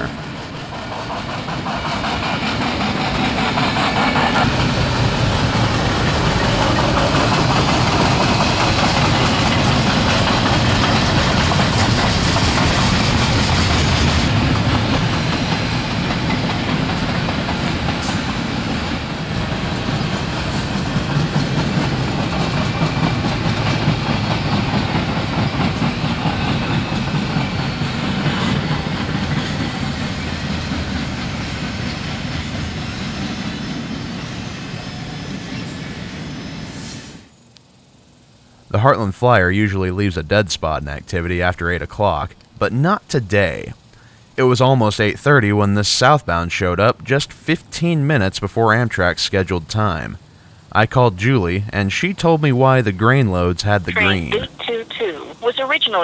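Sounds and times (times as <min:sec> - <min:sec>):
freight train wheels on rails: 0:00.0 - 0:37.8.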